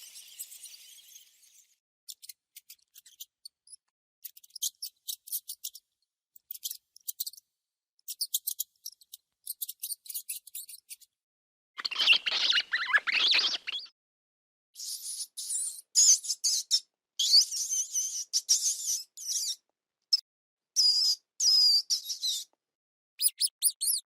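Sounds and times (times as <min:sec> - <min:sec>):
mouse squeaking: 0:02.1 - 0:05.8, 0:06.4 - 0:07.4, 0:08.0 - 0:11.1, 0:11.8 - 0:13.9, 0:14.8 - 0:20.2, 0:20.8 - 0:22.5, 0:23.2 - 0:24.0.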